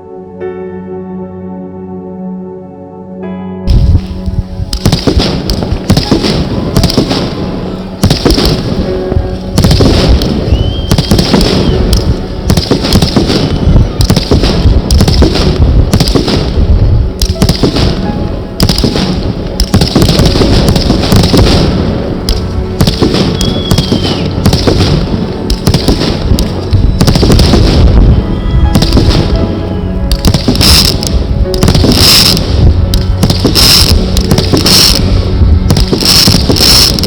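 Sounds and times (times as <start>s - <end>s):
fireworks bangs and crackling: 3.7s - 37.0s
firework whistle: 3.8s - 37.0s.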